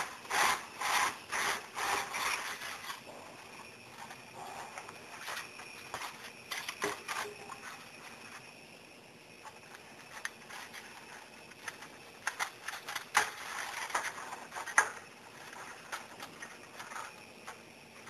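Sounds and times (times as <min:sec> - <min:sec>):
clicks and crackling rustle: 0:04.8 - 0:08.5, 0:09.4 - 0:18.0.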